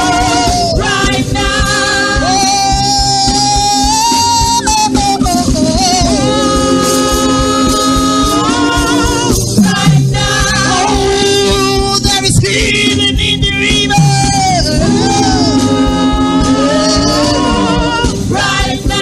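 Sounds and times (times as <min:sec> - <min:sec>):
band with steady beat: 0:00.0 - 0:19.0
gospel choir singing: 0:00.0 - 0:19.0.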